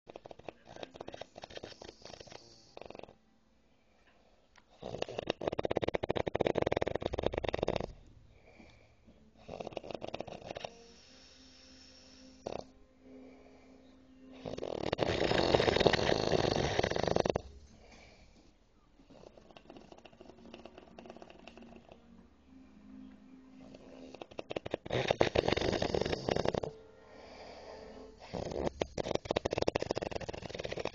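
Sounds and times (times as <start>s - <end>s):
soft breathing: 0.1s - 4.8s, 7.9s - 22.2s, 26.2s - 30.9s
man snoring loudly: 4.8s - 8.0s, 9.4s - 12.7s, 14.4s - 17.4s, 23.7s - 26.8s, 28.2s - 30.9s.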